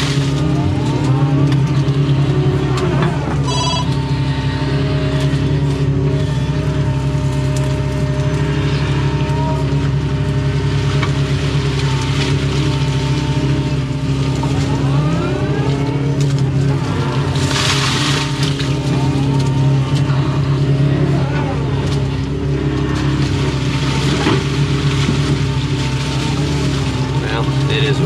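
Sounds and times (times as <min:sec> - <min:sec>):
diesel engine running: 0:00.0 - 0:28.0
hydraulics whining: 0:00.0 - 0:28.0.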